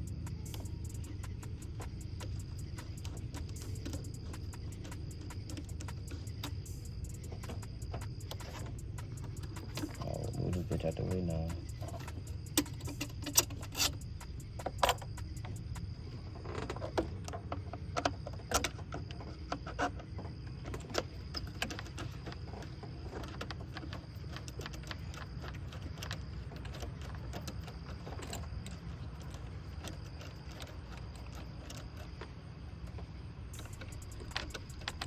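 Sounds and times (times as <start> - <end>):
steady low rumble: 0.0 - 16.5
hand tools clinking on metal: 2.2 - 15.2.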